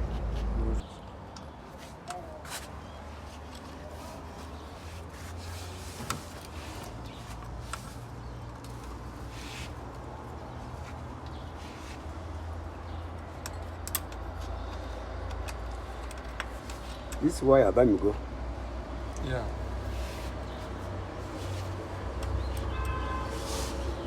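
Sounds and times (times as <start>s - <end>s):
parts clicking and tapping: 13.3s - 17.3s.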